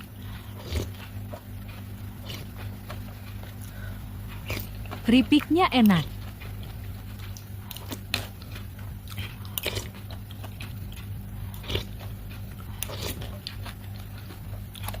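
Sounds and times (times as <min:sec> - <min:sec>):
chips crunching: 0:00.0 - 0:15.0
steady low hum: 0:00.0 - 0:15.0.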